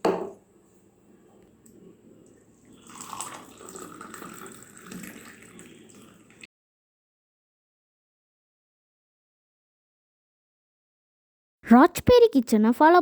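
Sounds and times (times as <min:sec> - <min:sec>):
coffee pouring into a cup: 0:01.1 - 0:06.5.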